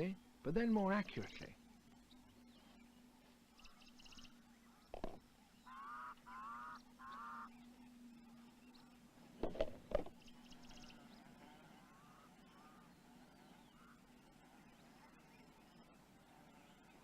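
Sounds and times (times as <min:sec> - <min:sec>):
bird honking calls: 0:04.6 - 0:07.6, 0:09.6 - 0:15.3
stone knocking on egg shell: 0:04.9 - 0:05.2, 0:09.4 - 0:10.1.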